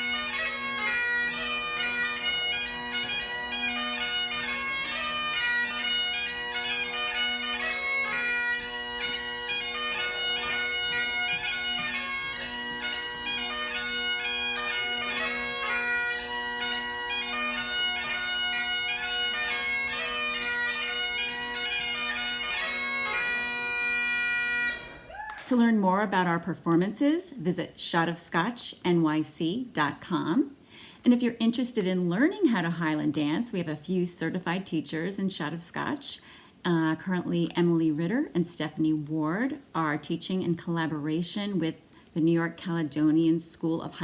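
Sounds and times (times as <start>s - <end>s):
bagpipe playing a tune: 0.0s - 25.1s.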